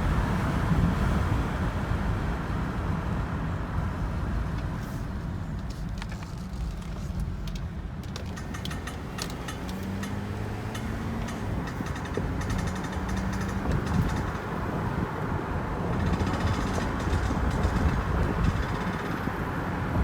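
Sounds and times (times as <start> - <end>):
road and drivetrain rumble: 0.0 - 20.0
sharp clicking from car: 4.4 - 15.2, 15.8 - 19.6.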